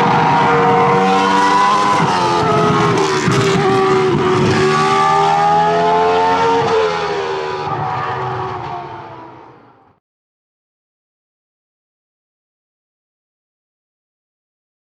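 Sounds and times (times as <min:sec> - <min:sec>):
racing car engine at high revs: 0:00.0 - 0:09.7.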